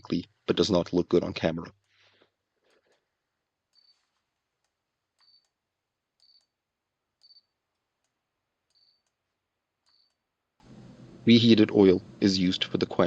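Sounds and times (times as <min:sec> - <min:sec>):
thermometer beeps with clicks: 0:03.7 - 0:04.1, 0:05.2 - 0:05.6, 0:06.2 - 0:06.5, 0:07.2 - 0:07.6, 0:08.7 - 0:09.2, 0:09.8 - 0:10.2.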